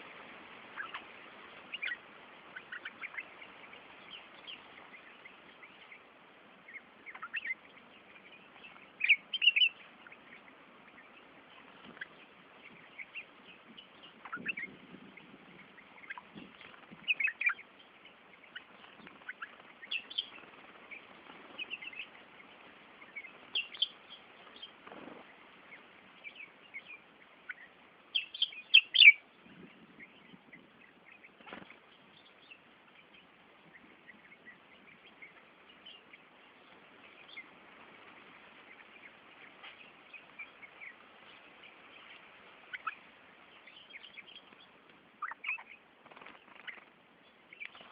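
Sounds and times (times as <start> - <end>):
small birds chirping: 0.0 - 47.9
wings rustling: 7.1 - 26.2, 31.2 - 32.1, 35.3 - 47.9.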